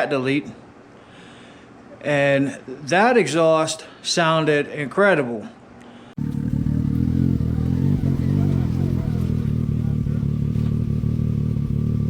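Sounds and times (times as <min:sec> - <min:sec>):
deep engine exhaust rumble: 0:06.2 - 0:12.0.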